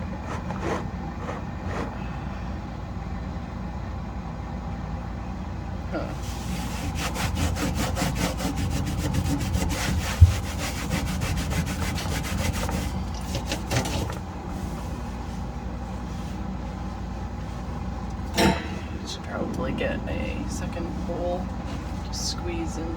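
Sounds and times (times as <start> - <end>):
cloth scrubbing a surface: 0.2 - 1.9, 6.2 - 17.6
sharp thump: 18.4 - 19.2.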